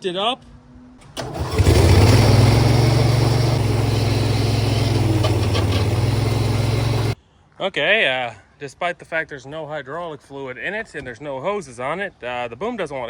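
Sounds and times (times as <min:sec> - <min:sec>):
diesel engine running: 0:01.0 - 0:07.2.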